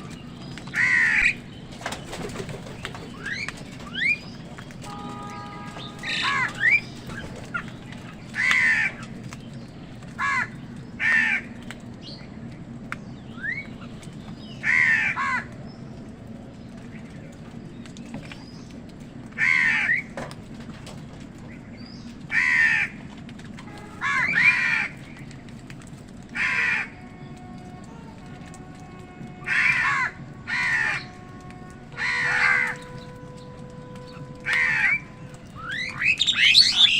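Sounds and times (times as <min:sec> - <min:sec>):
small birds chirping: 0:00.0 - 0:19.2, 0:23.4 - 0:36.9
crows cawing: 0:00.7 - 0:01.5, 0:04.9 - 0:09.2, 0:10.1 - 0:11.6, 0:14.6 - 0:15.6, 0:19.4 - 0:20.2, 0:22.2 - 0:25.5, 0:26.2 - 0:36.9.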